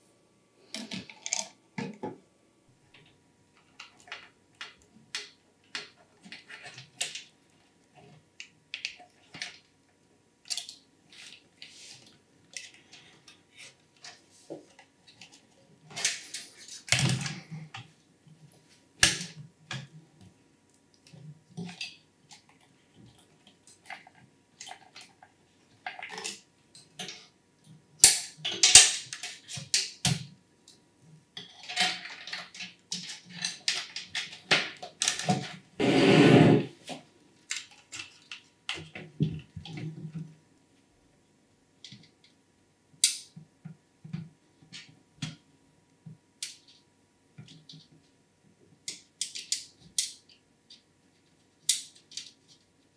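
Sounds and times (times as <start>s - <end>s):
computer parts clicking and tapping: 48.8s - 50.8s.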